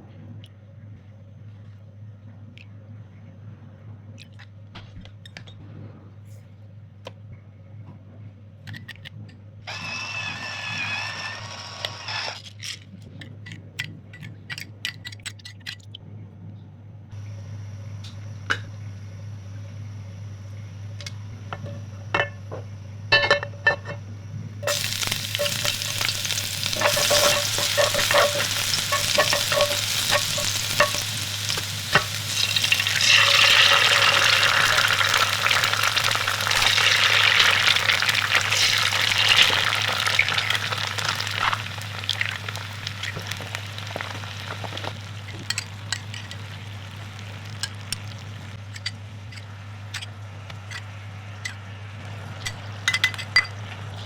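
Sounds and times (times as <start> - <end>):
eggs sizzling in oil: 9.7 - 12.4, 24.6 - 48.8.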